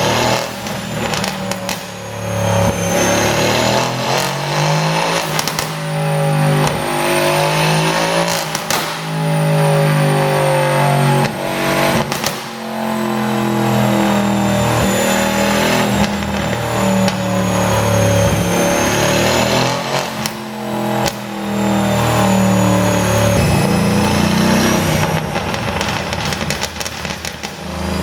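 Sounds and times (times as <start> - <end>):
car exhaust revving: 0.0 - 28.0
exhaust pops and cracks: 0.1 - 2.1, 5.2 - 6.9, 8.2 - 9.4, 11.2 - 13.0, 15.8 - 17.5, 20.1 - 24.3, 24.9 - 27.8.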